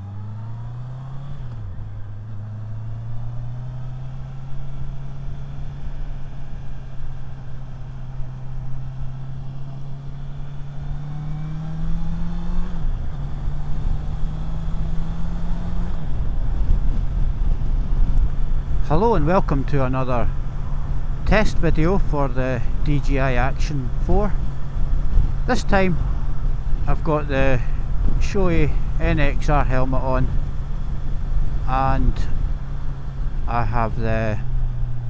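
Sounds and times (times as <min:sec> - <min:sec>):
motorcycle engine accelerating: 0:00.0 - 0:35.0
road rumble: 0:00.0 - 0:35.0
wind noise: 0:12.9 - 0:18.9, 0:22.3 - 0:33.5.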